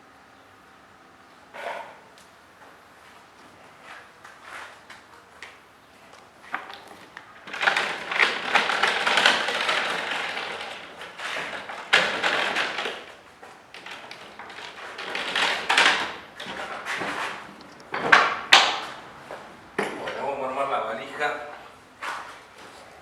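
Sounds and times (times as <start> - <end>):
wooden parts scraping and rattling: 6.5 - 20.4.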